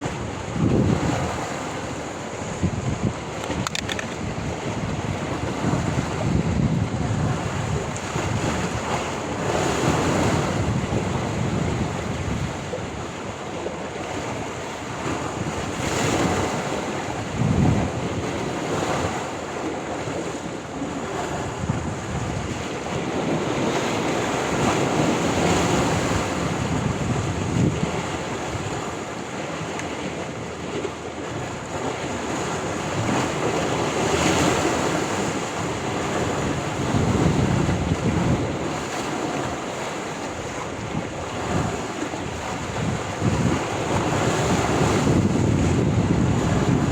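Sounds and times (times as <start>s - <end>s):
waves breaking on shore: 0.0s - 46.9s
wind buffeting microphone: 0.0s - 46.9s.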